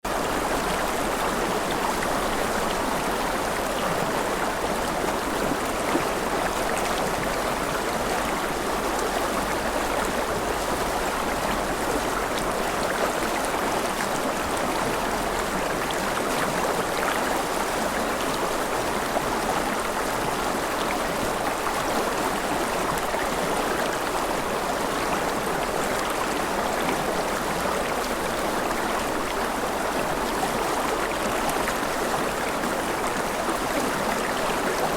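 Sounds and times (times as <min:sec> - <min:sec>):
river flowing over stones: 0:00.1 - 0:34.9.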